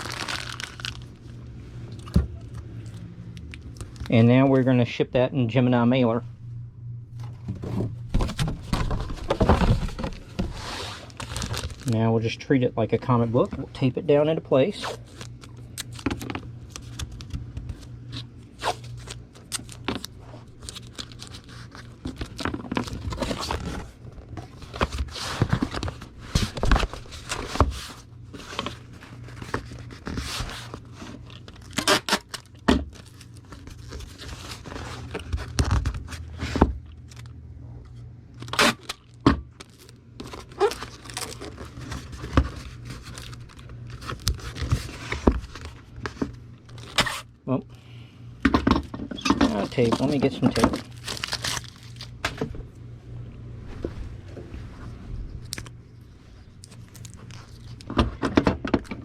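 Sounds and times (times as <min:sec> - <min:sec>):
packing materials rustling: 0:00.0 - 0:01.3, 0:08.1 - 0:12.0, 0:14.7 - 0:37.3, 0:38.4 - 0:47.3, 0:49.2 - 0:52.4, 0:56.5 - 0:58.0
steady low hum: 0:00.0 - 0:59.0.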